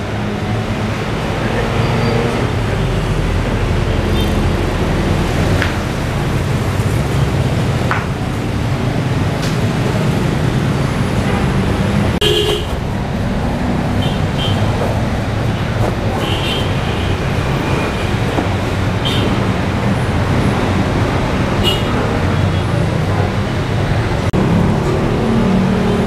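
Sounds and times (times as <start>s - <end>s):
road traffic rumble: 0.0s - 26.0s
vehicle horn toots: 12.2s - 12.8s.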